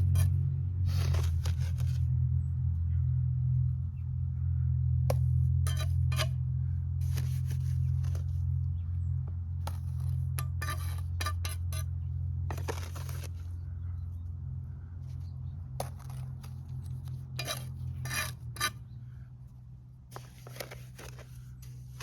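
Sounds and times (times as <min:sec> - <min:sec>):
trowel scraping cinder block: 0:00.0 - 0:02.0, 0:05.1 - 0:06.4, 0:07.0 - 0:08.4, 0:09.7 - 0:11.9, 0:12.5 - 0:13.4, 0:15.8 - 0:18.9, 0:20.1 - 0:22.0
steady low hum: 0:00.0 - 0:22.0.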